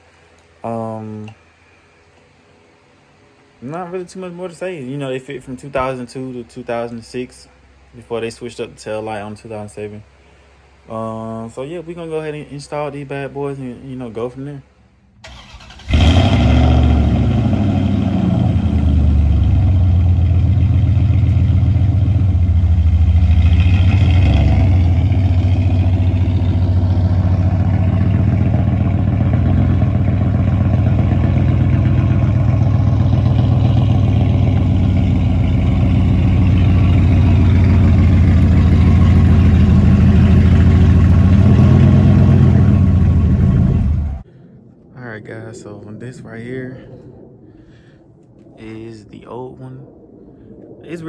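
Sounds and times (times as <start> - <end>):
pickup truck engine idling: 15.2 - 44.2.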